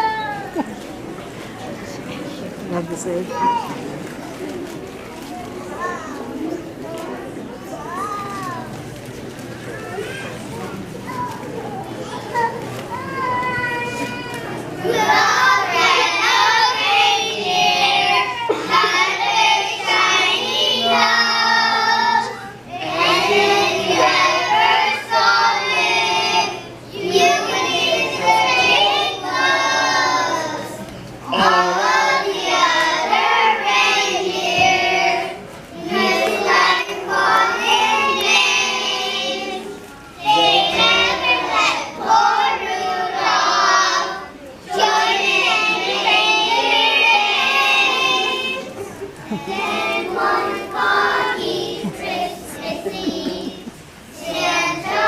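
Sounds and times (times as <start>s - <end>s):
children's choir singing: 12.1s - 55.0s.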